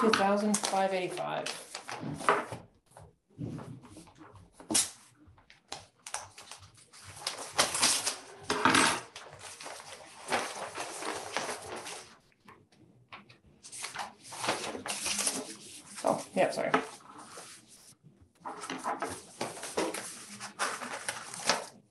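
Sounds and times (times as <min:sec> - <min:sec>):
paper rustling and crinkling: 0:00.0 - 0:02.7, 0:05.6 - 0:12.3, 0:13.6 - 0:21.9
envelope tearing open: 0:19.5 - 0:21.8.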